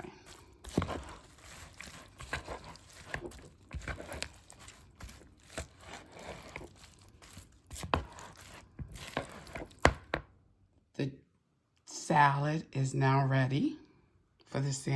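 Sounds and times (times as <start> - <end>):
salad being stirred in a bowl: 0.0 - 10.2.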